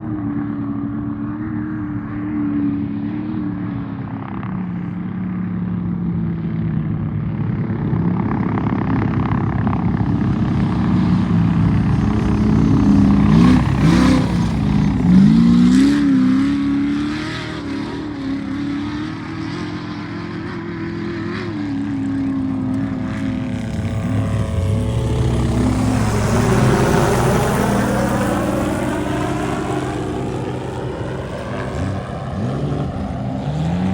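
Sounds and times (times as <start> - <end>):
vehicle passing by: 10.7 - 33.9
truck engine revving: 11.2 - 19.0, 21.4 - 33.9.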